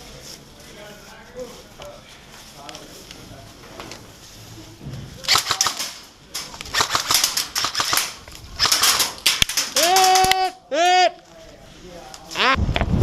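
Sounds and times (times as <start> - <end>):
airsoft gun shots: 5.3 - 6.0, 6.7 - 10.3.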